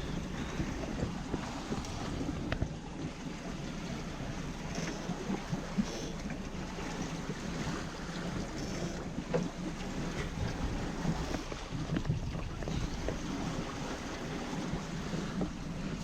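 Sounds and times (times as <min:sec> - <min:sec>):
wind buffeting microphone: 0:00.0 - 0:05.8, 0:06.4 - 0:16.0
boat engine running: 0:00.0 - 0:16.0
water washing along hull: 0:00.0 - 0:16.0.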